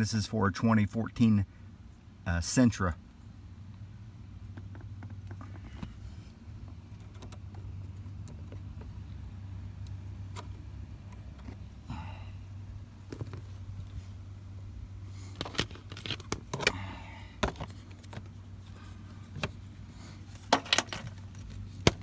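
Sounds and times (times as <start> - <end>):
steady low hum: 0.0 - 22.0
handling clicks and rattles: 4.4 - 11.8, 15.1 - 22.0.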